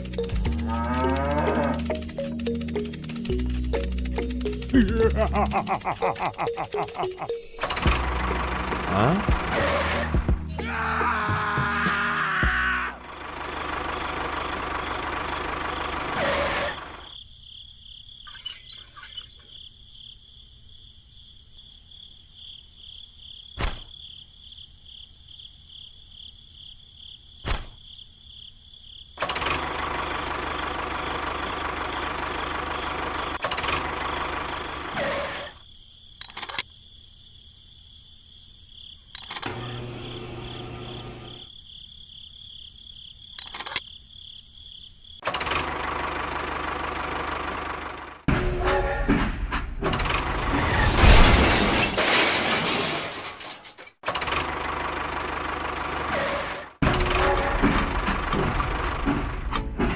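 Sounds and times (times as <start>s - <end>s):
sharp clicks: 0.0s - 7.2s, 36.2s - 36.7s, 43.4s - 43.9s
small electric motor whining: 39.3s - 41.5s.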